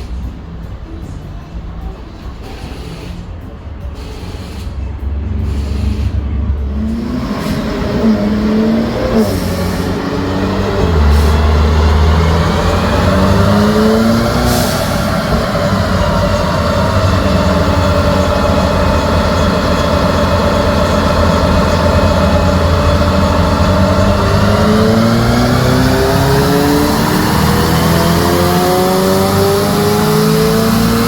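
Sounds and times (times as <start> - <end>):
car engine revving on dyno: 5.4 - 31.0.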